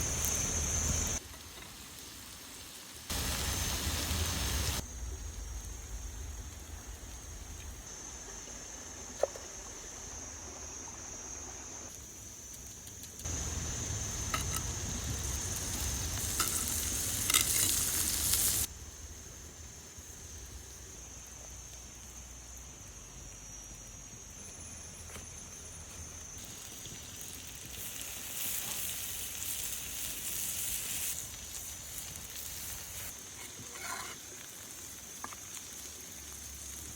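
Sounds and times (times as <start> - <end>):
steak sizzling on hot stone: 0.1 - 4.8, 13.2 - 18.7, 26.4 - 36.9.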